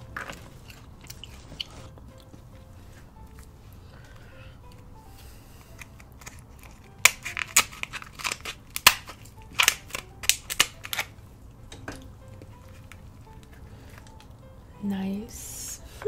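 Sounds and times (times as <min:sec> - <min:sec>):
crab shell cracking: 0:05.6 - 0:14.4.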